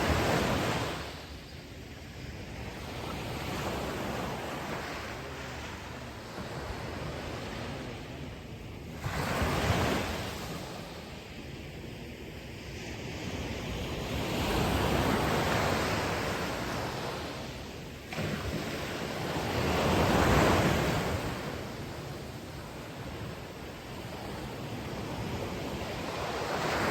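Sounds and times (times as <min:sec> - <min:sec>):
ocean waves breaking: 0:13.4 - 0:26.9.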